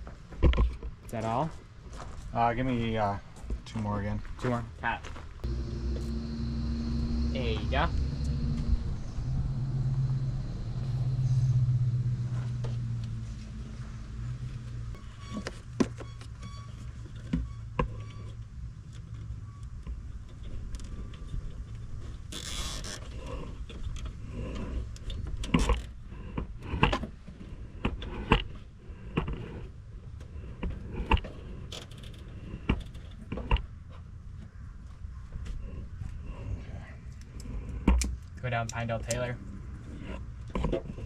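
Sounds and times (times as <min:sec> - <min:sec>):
low hum: 0:05.4 - 0:19.2.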